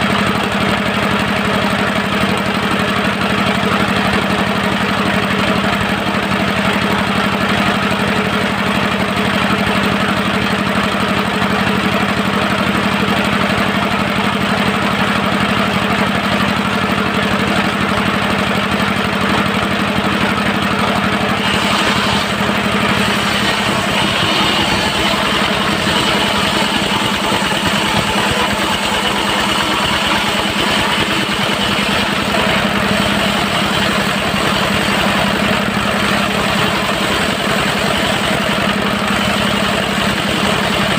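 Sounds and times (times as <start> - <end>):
diesel engine running: 0.0 - 40.9
high steady whine: 21.3 - 38.4.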